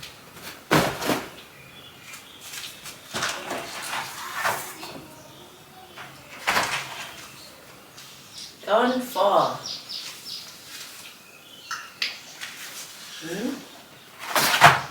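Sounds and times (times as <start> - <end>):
objects knocking and bumping: 0.0 - 1.4, 2.8 - 7.5, 14.2 - 14.9.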